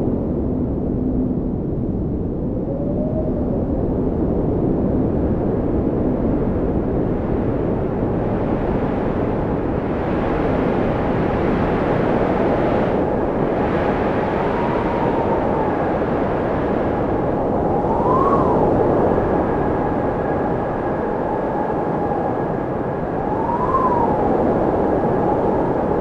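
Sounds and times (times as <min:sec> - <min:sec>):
strong wind blowing: 0:00.0 - 0:26.0
faint wind whistle: 0:11.8 - 0:26.0.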